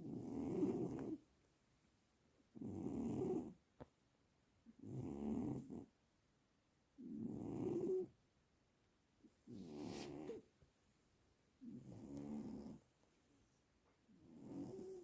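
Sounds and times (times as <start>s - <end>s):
cat snoring: 0.0s - 1.2s, 2.5s - 3.6s, 4.8s - 5.9s, 7.0s - 8.1s, 9.5s - 10.4s, 11.6s - 12.8s, 14.1s - 15.0s.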